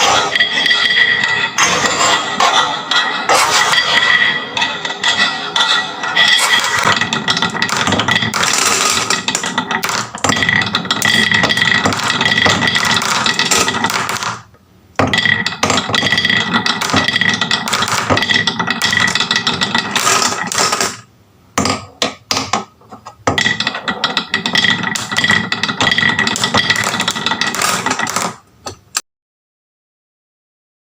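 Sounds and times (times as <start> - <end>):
marbles rattling down wooden tracks: 6.2 - 28.5.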